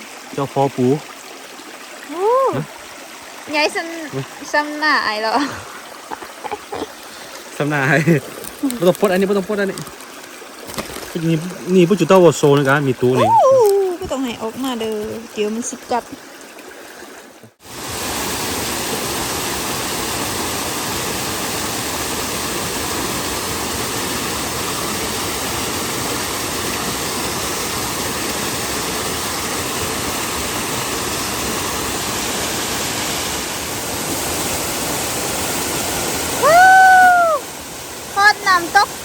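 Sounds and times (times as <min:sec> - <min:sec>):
waterfall rushing: 0:02.1 - 0:39.0.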